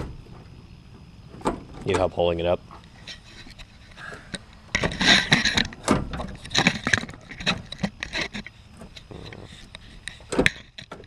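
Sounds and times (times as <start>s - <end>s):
radiator knocking and clanking: 0.0s - 11.0s.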